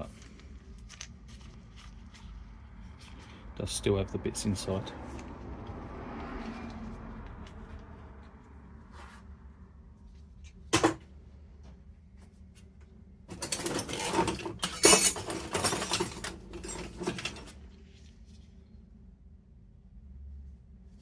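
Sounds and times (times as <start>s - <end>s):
metal hand tools clattering: 13.3s - 17.6s.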